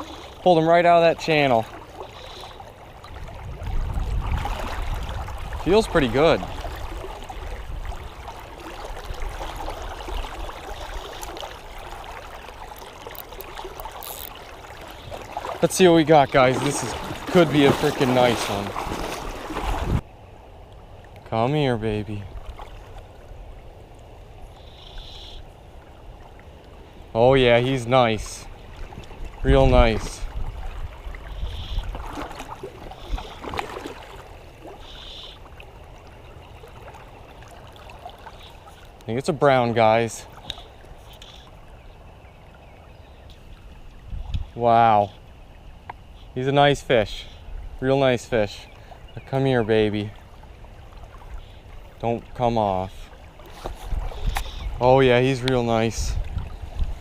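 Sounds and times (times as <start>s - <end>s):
creek water rushing: 0.0s - 45.6s, 46.4s - 57.0s
high buzzy calls: 34.5s - 35.6s.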